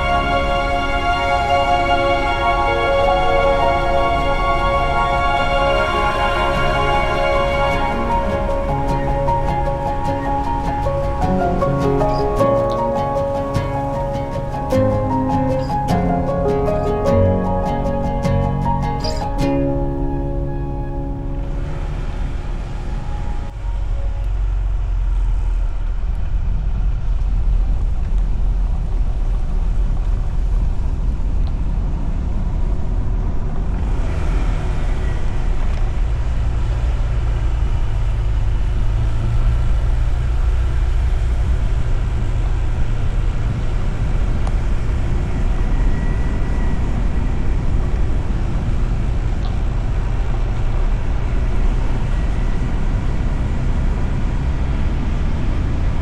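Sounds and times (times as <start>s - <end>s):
scooter engine and road noise: 0.0s - 56.0s
wind rumble on microphone: 20.7s - 56.0s.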